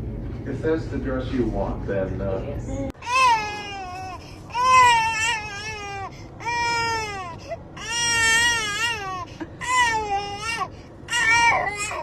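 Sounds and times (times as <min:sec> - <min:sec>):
infant crying: 0:03.0 - 0:12.0.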